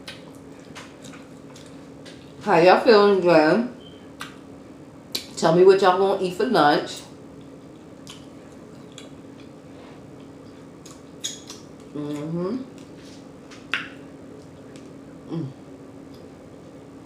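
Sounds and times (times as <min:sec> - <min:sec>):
faint steady hum: 0:00.0 - 0:17.0
mouth smacking and chewing: 0:07.4 - 0:09.6, 0:10.2 - 0:13.0.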